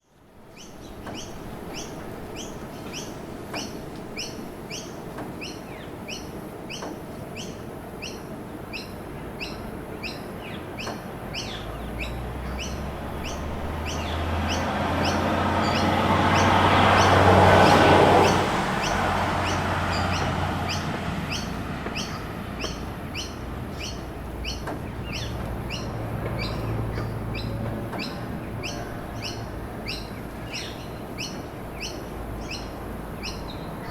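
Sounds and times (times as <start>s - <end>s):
low traffic rumble: 0.0s - 33.9s
vehicle passing close: 11.1s - 33.8s.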